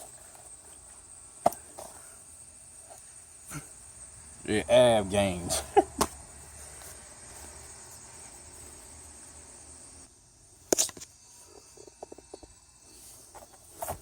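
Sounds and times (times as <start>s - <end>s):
high insect buzz: 0.0s - 14.0s.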